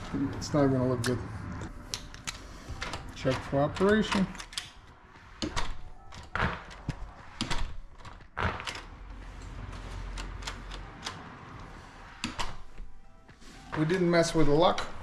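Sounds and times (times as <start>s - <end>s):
door lever and latch clicking: 1.9s - 4.8s.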